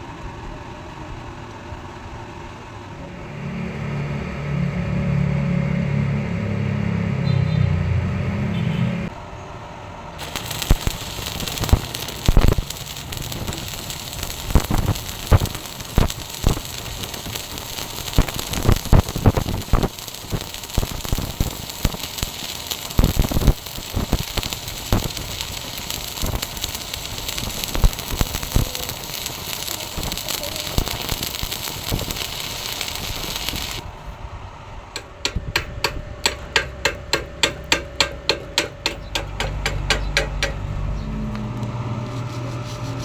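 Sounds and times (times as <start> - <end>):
welding arc crackling and popping: 10.2 - 34.1, 35.0 - 42.3.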